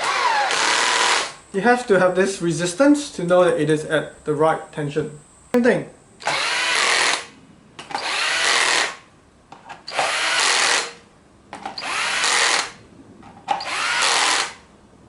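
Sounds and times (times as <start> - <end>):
electric drill-driver running: 0.0 - 1.4, 6.2 - 7.3, 7.9 - 9.0, 9.9 - 11.0, 11.8 - 12.8, 13.6 - 14.6.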